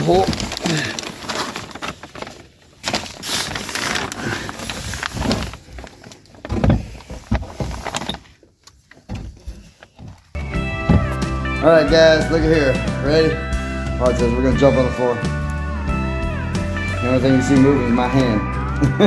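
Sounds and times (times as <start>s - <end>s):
heavy thumps: 9.1s - 14.3s.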